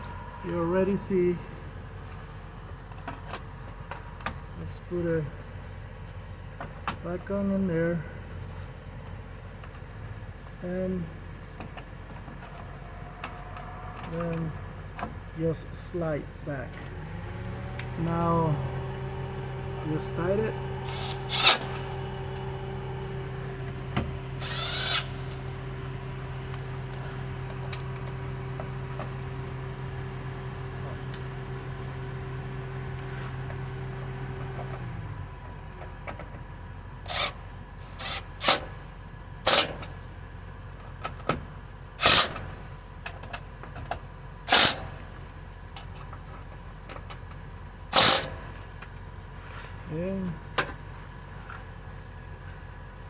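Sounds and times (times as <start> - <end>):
machine hum: 0.0 - 2.2, 12.2 - 35.8, 37.0 - 38.7
hand tool rasp: 20.9 - 21.9, 24.4 - 25.4, 37.1 - 38.7, 48.0 - 48.4.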